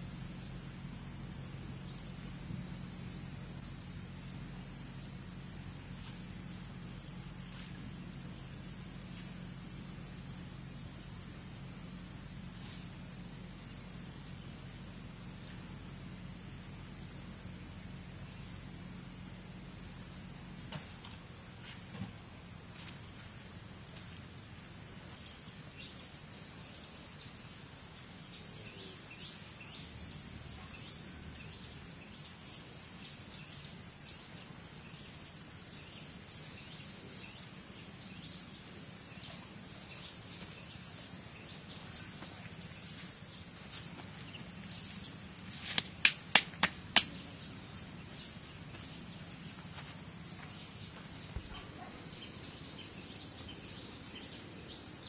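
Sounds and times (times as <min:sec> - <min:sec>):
insect calling in high pulses: 0:00.0 - 0:21.7, 0:22.3 - 0:55.0
outdoor background noise: 0:00.0 - 0:55.0
sharp loud clicks: 0:45.7 - 0:47.2.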